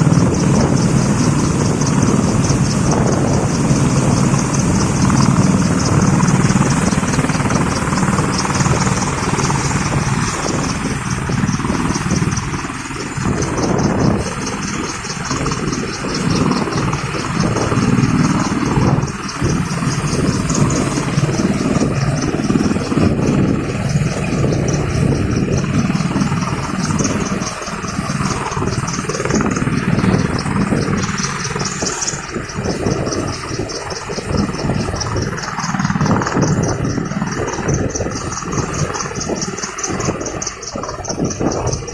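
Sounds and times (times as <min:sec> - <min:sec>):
helicopter rotor chopping: 0:00.0 - 0:41.9.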